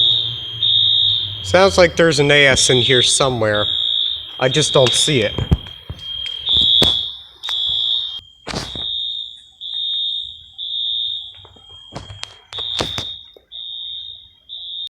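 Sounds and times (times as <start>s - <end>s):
faint steady alarm tone: 0.0s - 14.9s
pulsing fire alarm horn: 0.0s - 14.9s
sharp knocks: 4.4s - 7.1s, 8.5s - 8.9s, 11.5s - 13.2s.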